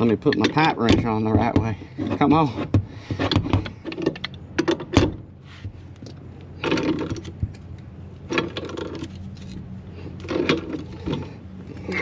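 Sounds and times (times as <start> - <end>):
wrench scraping metal on metal: 0.0 - 4.4
steady motor hum: 0.0 - 12.0.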